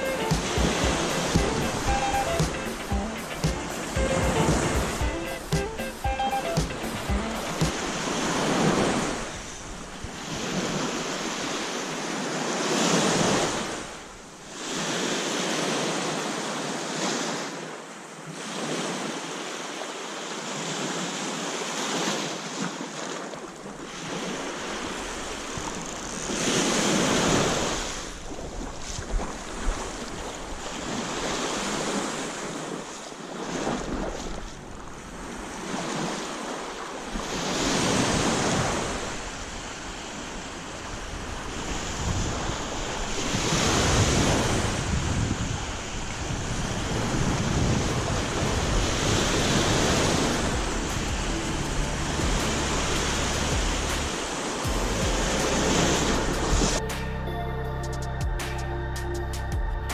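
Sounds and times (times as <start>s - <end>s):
waves washing onto beach: 0.0s - 56.9s
wind buffeting microphone: 37.2s - 56.9s.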